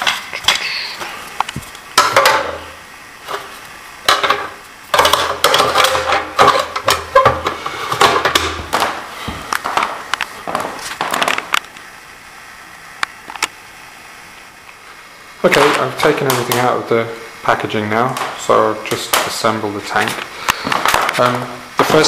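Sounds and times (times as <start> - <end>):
sharp knocks and clicks: 4.1 - 8.9
packaging crinkling and rustling: 6.4 - 11.8.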